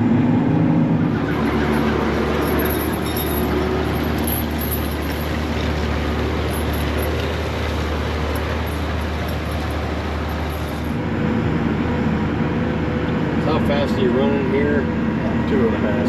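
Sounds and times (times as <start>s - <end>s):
tractor engine running: 1.0s - 11.0s.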